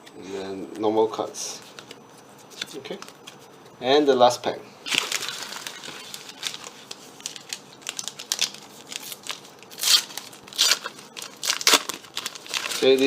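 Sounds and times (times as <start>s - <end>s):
wrapper tearing and crinkling: 4.9s - 13.0s.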